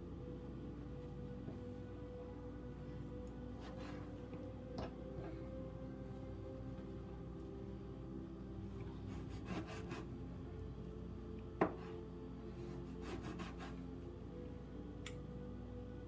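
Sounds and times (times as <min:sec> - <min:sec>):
knife scraping strokes: 0:09.1 - 0:10.1.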